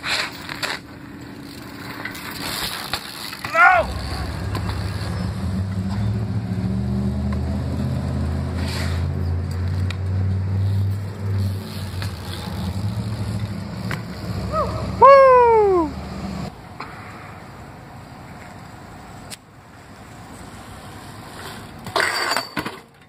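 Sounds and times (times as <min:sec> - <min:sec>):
vehicle engine running: 0:03.6 - 0:09.3, 0:10.0 - 0:16.5.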